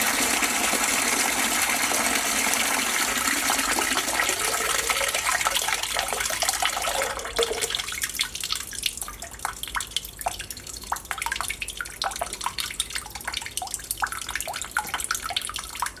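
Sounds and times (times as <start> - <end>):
faucet running into basin: 0.0 - 16.0
water drops dripping: 4.3 - 16.0.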